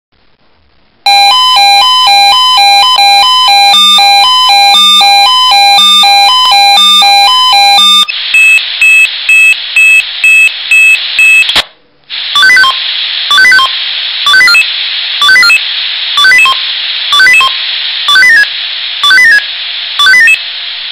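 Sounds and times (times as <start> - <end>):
pager alert melody: 1.1 - 8.1.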